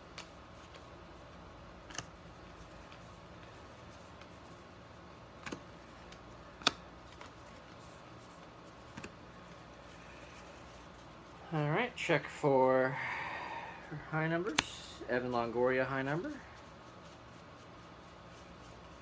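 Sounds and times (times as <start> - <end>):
steady low hiss: 0.0 - 19.0
trading cards clicking and tapping: 5.4 - 7.9, 8.7 - 9.2, 14.4 - 14.8.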